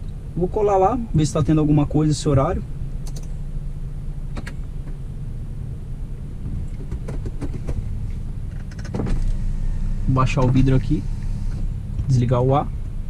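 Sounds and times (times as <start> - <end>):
car engine idling: 0.0 - 13.0
light clicks: 3.0 - 3.4.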